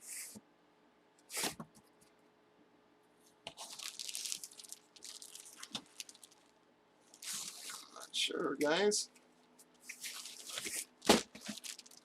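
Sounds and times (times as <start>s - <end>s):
plastic packaging crinkling and tearing: 3.5s - 8.0s, 9.9s - 12.0s.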